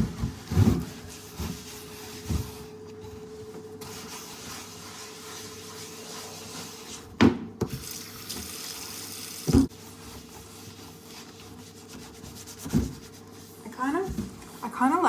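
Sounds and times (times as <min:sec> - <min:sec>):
hands scrubbing paste on board: 0:03.8 - 0:07.0, 0:09.7 - 0:14.8.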